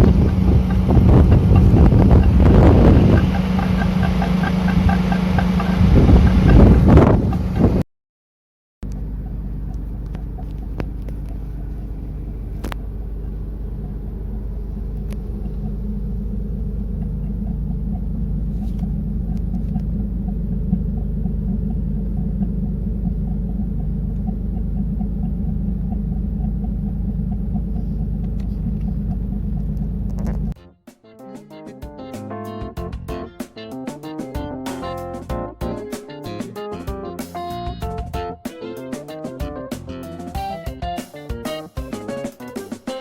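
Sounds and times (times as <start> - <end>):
car engine running: 0.0 - 7.8, 8.8 - 30.6.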